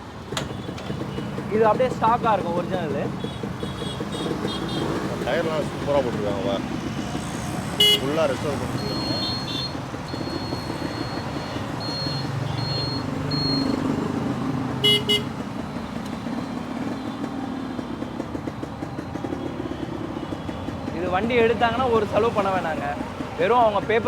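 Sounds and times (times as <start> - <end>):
motorcycle engine idling: 0.0 - 13.7, 14.5 - 23.9
traffic horns honking: 0.0 - 24.0.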